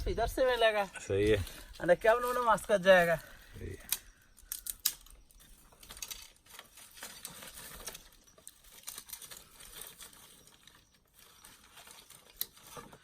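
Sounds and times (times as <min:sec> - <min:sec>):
faint irregular clicks: 0:03.8 - 0:13.0.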